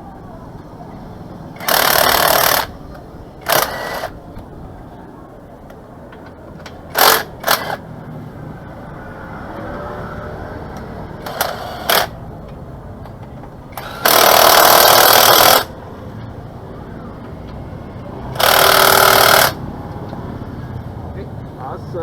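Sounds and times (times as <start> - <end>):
pneumatic impact wrench bursts: 1.6 - 2.8, 3.4 - 4.1, 6.9 - 7.8, 11.2 - 12.2, 13.7 - 15.8, 18.4 - 19.6.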